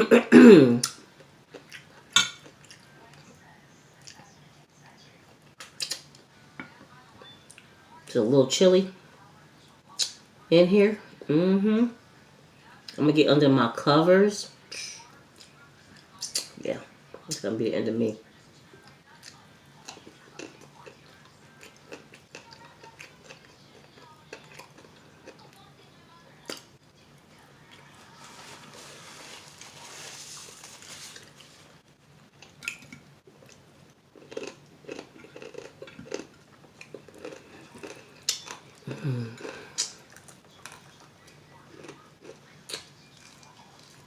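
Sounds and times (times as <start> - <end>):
mouth clicks and smacks: 5.6 - 6.1
chewing and biting fried chicken: 19.1 - 25.7, 33.4 - 38.8, 39.4 - 44.0.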